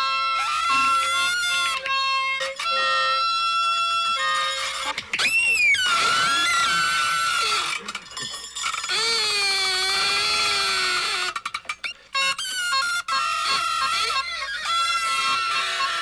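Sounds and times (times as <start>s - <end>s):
party noisemaker horns: 0.0s - 11.4s.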